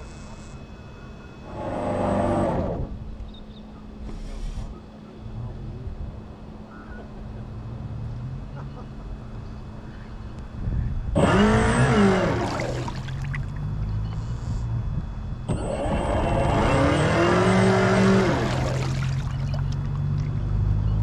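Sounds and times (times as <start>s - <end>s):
steady low hum: 0.0s - 21.0s
model boat motor revving: 1.3s - 3.1s, 11.1s - 14.7s, 15.5s - 19.9s.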